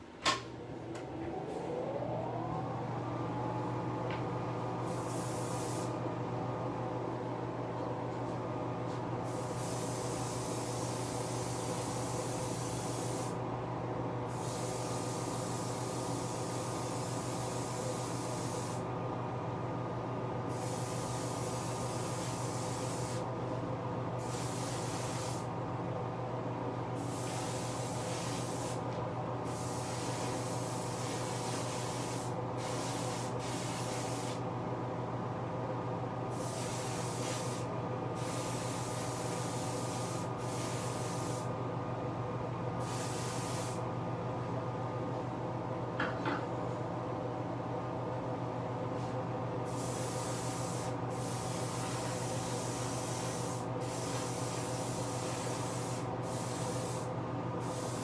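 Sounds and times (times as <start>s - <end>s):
steady motor hum: 0.6s - 4.9s
spray gun hissing: 4.9s - 6.0s, 9.3s - 13.4s, 14.3s - 18.8s, 20.5s - 23.2s, 24.2s - 25.5s, 27.0s - 28.8s, 29.5s - 34.4s, 36.3s - 41.5s, 42.8s - 43.8s, 49.7s - 58.0s.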